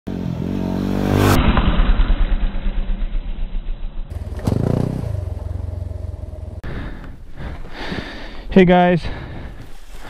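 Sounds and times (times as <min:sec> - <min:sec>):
motorcycle engine revving: 0:00.1 - 0:06.6.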